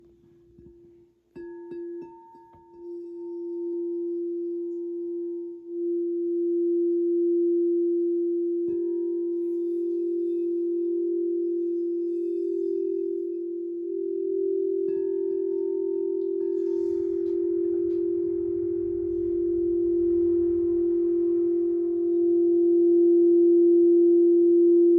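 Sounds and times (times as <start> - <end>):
singing bowl ringing tone: 1.3 - 24.9
singing bowl strikes: 8.7 - 23.4.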